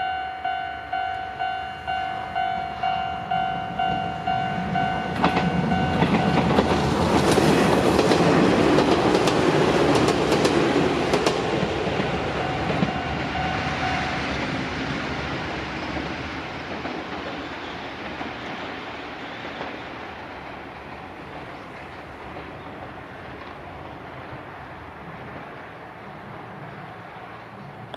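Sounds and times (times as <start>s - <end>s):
crossing warning bell: 0.0s - 7.5s, 11.2s - 14.9s
train wheels clacking over rails: 3.3s - 27.9s.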